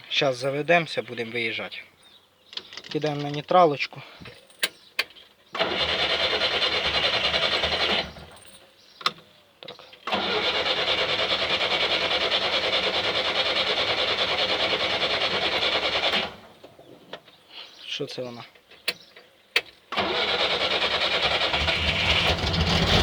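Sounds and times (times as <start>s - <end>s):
starter cranking engine: 5.6s - 8.4s, 10.0s - 16.4s, 19.9s - 23.0s.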